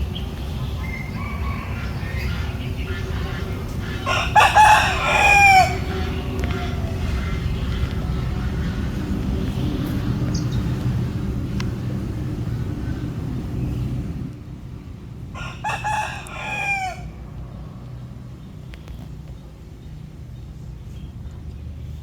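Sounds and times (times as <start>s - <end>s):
steady low rumble: 0.0s - 22.0s
rooster crowing: 0.7s - 8.8s, 15.3s - 17.2s.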